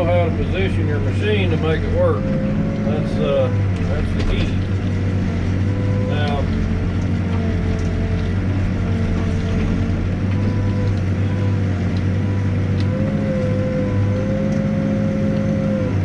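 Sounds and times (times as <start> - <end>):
diesel engine running: 0.0 - 16.0
steady whine: 0.0 - 16.0.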